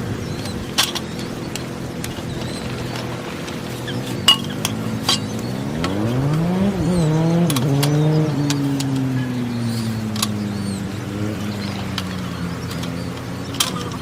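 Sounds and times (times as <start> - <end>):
vehicle engine accelerating: 0.0 - 14.0.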